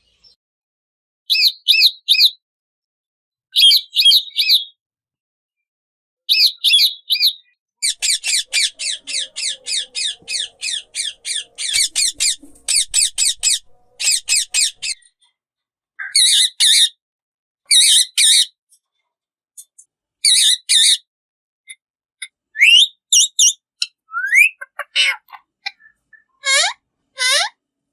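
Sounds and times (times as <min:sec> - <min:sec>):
parrots calling: 0:07.8 - 0:15.0, 0:16.0 - 0:16.9, 0:17.7 - 0:18.5, 0:20.3 - 0:21.0, 0:22.6 - 0:27.6.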